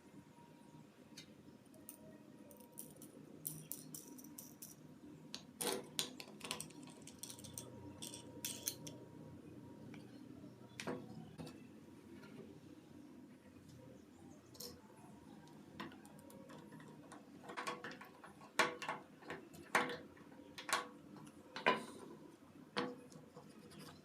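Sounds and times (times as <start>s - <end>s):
faint low hum: 0.0s - 24.0s
small metal parts clinking: 1.9s - 4.8s, 5.6s - 9.0s.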